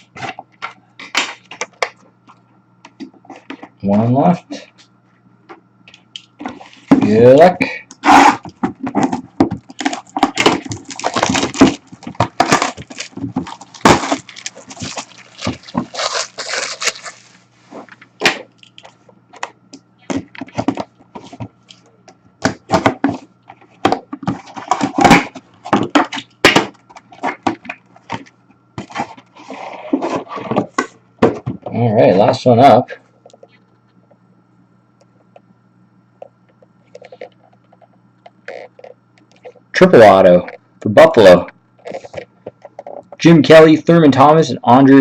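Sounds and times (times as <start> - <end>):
packaging crinkling and tearing: 8.1 - 18.9.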